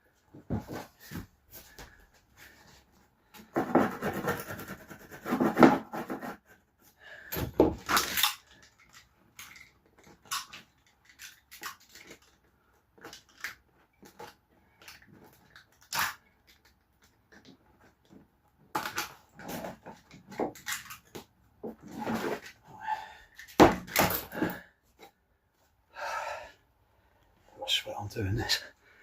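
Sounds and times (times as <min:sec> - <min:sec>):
scraping flooring with hand tool: 0:03.4 - 0:06.5, 0:21.6 - 0:22.6.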